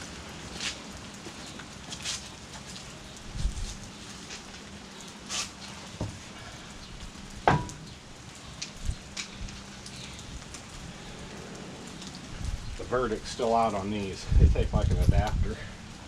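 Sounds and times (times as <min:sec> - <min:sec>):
dull thump: 0:07.4 - 0:07.8.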